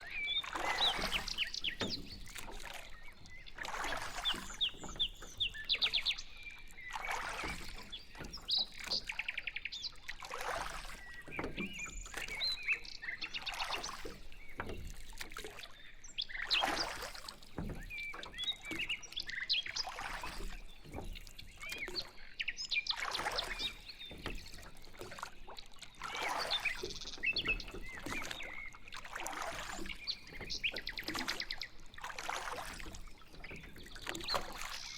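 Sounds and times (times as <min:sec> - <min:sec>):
oars swishing through water: 0:00.0 - 0:34.9
birds chirping and trilling: 0:00.1 - 0:10.0, 0:26.1 - 0:31.8.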